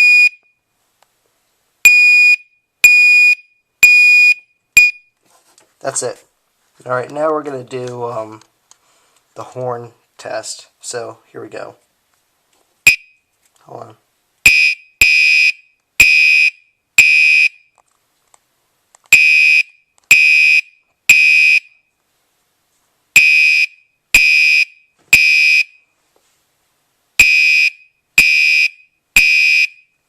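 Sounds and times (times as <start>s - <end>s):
fire alarm horn blasts: 14.5s - 17.6s, 19.2s - 21.7s, 23.2s - 25.8s, 27.2s - 29.9s.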